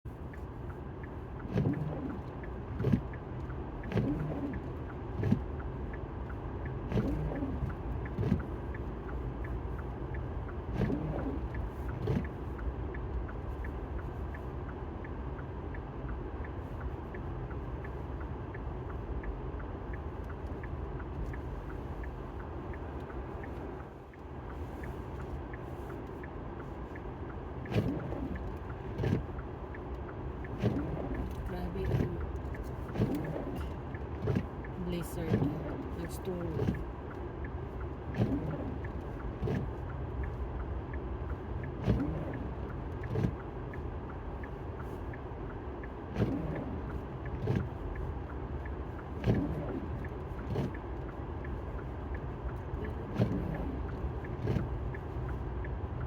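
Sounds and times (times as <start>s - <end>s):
road noise inside moving car: 0.0s - 56.0s
faint regular ticking: 0.2s - 56.0s.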